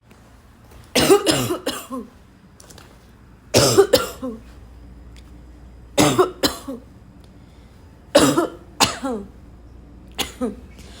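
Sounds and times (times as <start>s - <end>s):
person coughing: 0.9s - 2.2s, 3.5s - 4.5s, 6.0s - 6.9s, 8.1s - 9.3s, 10.2s - 10.7s.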